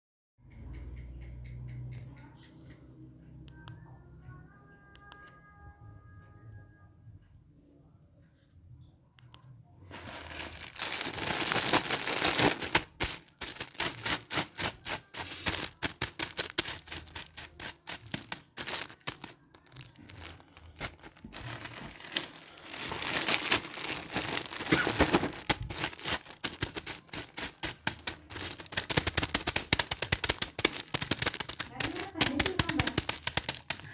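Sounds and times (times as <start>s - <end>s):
dense crackling and clicking: 9.9s - 33.9s.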